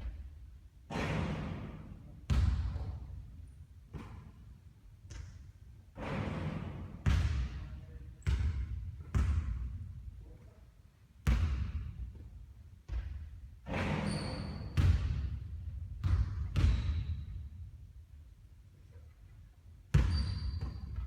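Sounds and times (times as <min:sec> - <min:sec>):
basketball bouncing on court floor: 0:00.9 - 0:03.0, 0:03.9 - 0:04.3, 0:05.0 - 0:05.4, 0:06.0 - 0:10.0, 0:11.2 - 0:12.3, 0:12.9 - 0:17.6, 0:19.9 - 0:21.0.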